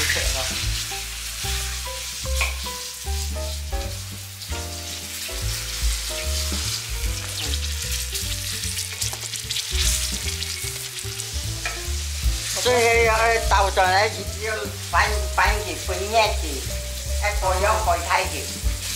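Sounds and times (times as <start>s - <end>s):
background music: 0.0s - 18.9s
food deep-frying in oil: 0.0s - 18.9s.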